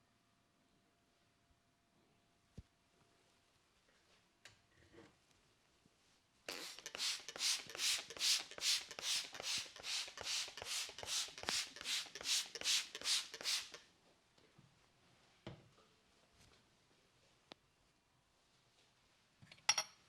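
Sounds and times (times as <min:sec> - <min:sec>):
hands rubbing through hair: 0:06.5 - 0:13.8.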